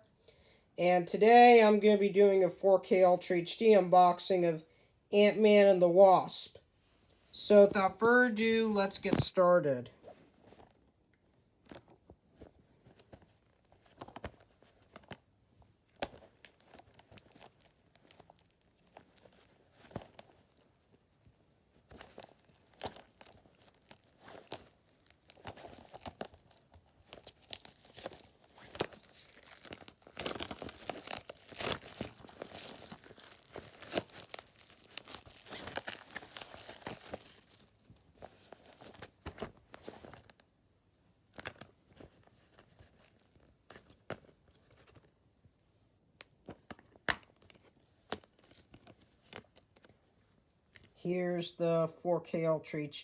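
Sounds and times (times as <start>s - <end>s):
plastic wrap tearing and crinkling: 13.0s - 40.4s, 41.2s - 45.1s, 47.4s - 49.9s.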